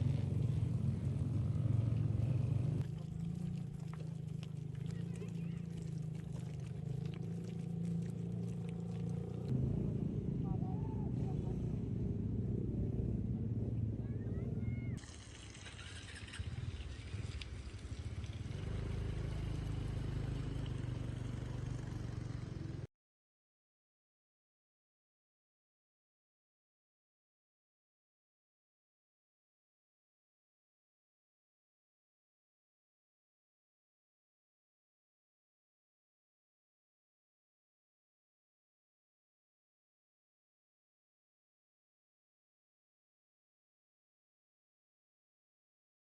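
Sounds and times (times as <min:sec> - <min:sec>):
outdoor noise: 0:00.0 - 0:22.9
vehicle engines rumbling: 0:00.0 - 0:22.9.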